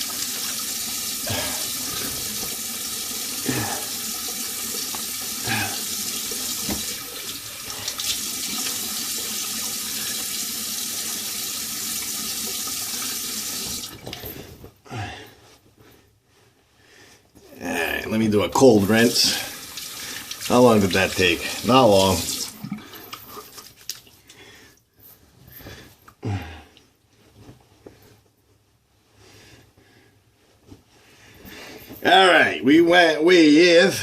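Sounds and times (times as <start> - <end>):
sink tap running: 0.0 - 14.1, 19.1 - 22.8.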